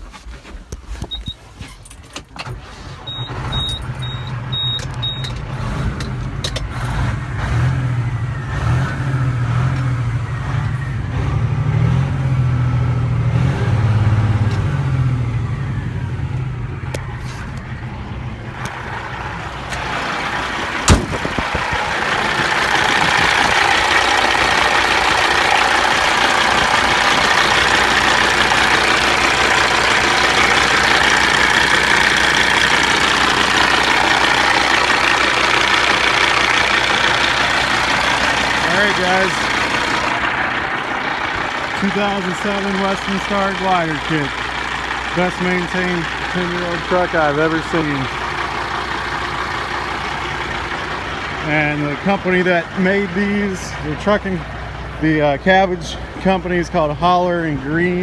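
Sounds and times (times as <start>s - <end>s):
diesel truck engine running: 1.1s - 58.0s
short beeps: 3.1s - 5.3s
sharp engine knock: 20.9s - 23.6s.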